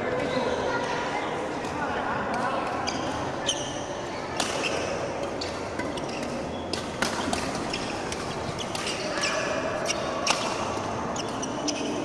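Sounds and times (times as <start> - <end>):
shoes squeaking on court floor: 2.8 - 3.9, 4.5 - 10.2, 11.1 - 12.0
rackets striking shuttlecock: 4.4 - 12.0.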